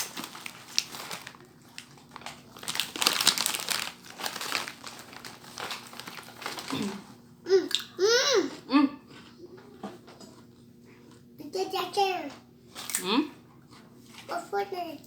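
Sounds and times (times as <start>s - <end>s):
snack wrapper crinkling: 0.0s - 7.1s.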